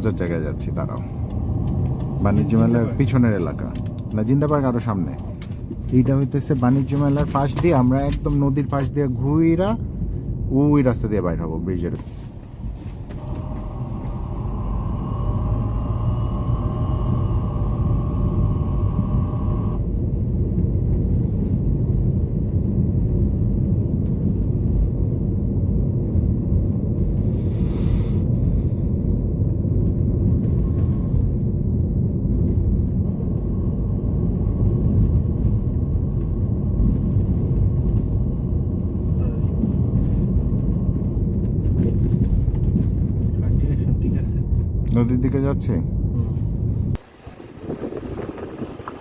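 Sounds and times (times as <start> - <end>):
car road and engine rumble: 0.0 - 49.0
wavering tone: 13.2 - 19.8.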